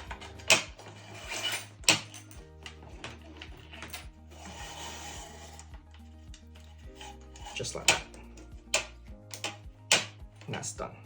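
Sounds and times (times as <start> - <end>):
background music: 0.0 - 11.0
sliding rub of curtain belt: 3.2 - 6.0.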